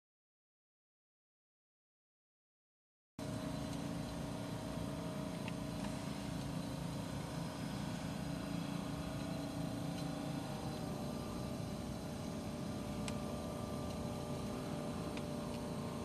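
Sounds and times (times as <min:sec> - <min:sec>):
steady background noise: 0:03.2 - 0:16.0
vehicle engine humming: 0:03.2 - 0:16.0.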